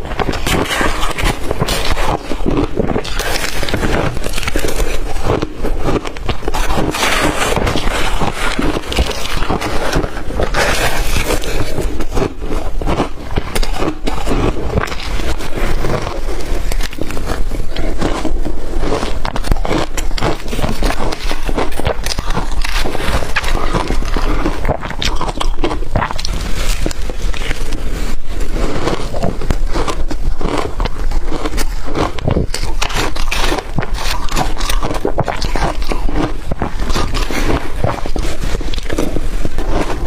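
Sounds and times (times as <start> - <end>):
mouth crunching ice: 0.0 - 40.0.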